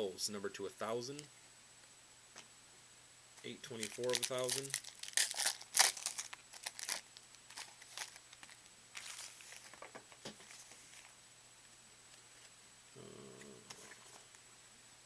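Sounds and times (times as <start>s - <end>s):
cards rustling and clicking: 3.7s - 11.1s.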